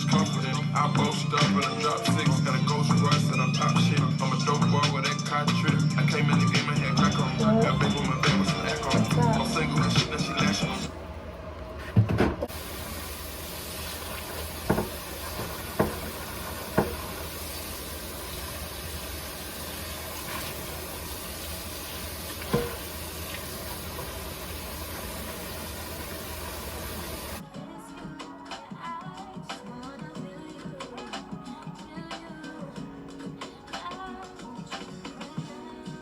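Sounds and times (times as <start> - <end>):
low hum: 5.6 - 27.4
steady rushing hiss: 12.5 - 27.4.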